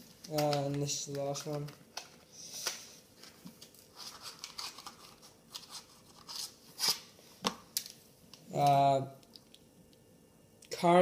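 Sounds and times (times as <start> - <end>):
packaging rustling and crinkling: 0.2 - 7.0.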